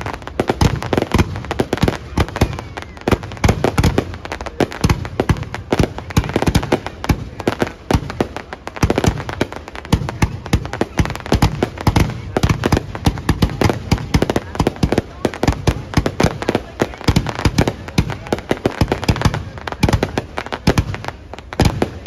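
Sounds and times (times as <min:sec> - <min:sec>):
fireworks crackling: 0:00.0 - 0:22.0.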